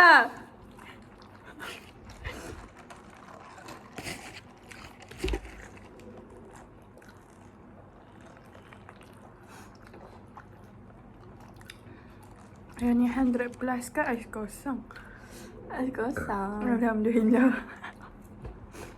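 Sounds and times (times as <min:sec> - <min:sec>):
eating and drinking noises: 0:00.0 - 0:18.9.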